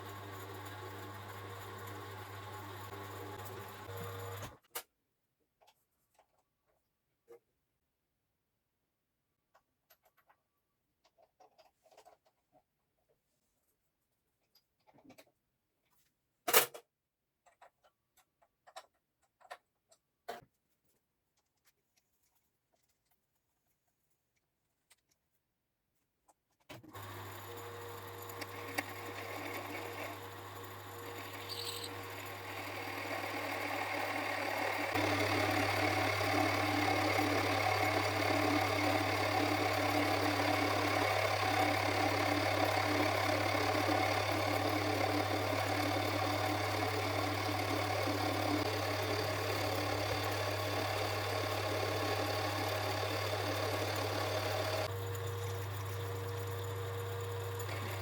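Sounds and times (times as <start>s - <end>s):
lathe motor humming and whirring: 0.0s - 4.5s, 27.0s - 58.0s.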